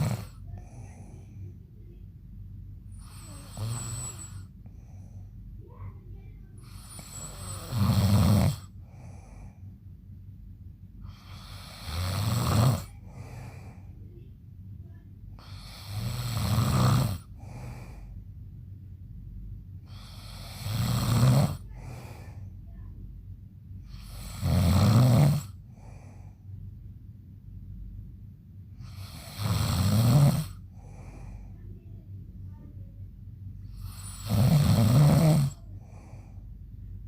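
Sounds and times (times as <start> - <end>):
man snoring loudly: 0.0 - 0.3, 3.0 - 4.4, 6.7 - 9.1, 11.1 - 12.9, 15.4 - 17.7, 19.9 - 22.1, 23.9 - 25.9, 28.8 - 30.9, 33.8 - 35.6
soft breath: 0.0 - 2.1, 2.8 - 7.9, 8.6 - 10.1, 11.0 - 12.0, 12.8 - 16.2, 17.2 - 18.5, 21.5 - 24.4, 25.5 - 26.7, 30.5 - 34.3, 35.4 - 37.0.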